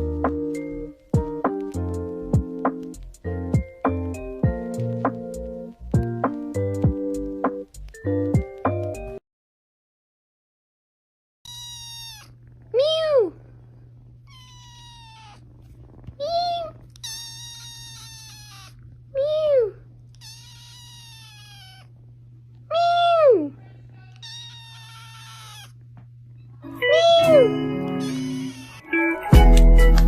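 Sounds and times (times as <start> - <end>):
cat meowing: 11.5 - 13.3, 14.3 - 15.5, 16.2 - 22.0, 24.2 - 25.8, 26.7 - 29.1
steady low hum: 12.3 - 26.7.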